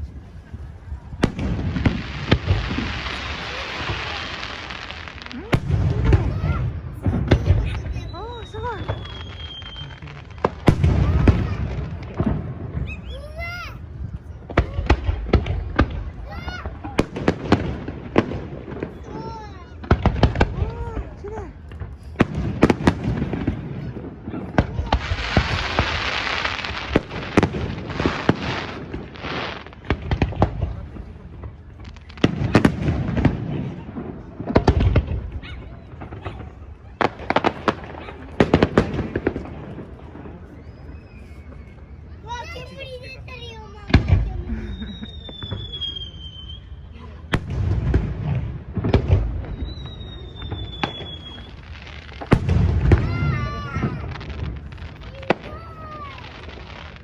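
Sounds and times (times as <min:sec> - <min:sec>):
crackling hisses of fireworks: 0:00.0 - 0:57.0
fireworks bangs: 0:00.0 - 0:57.0
thin high whistle: 0:07.9 - 0:10.0, 0:40.4 - 0:42.2, 0:44.8 - 0:46.8.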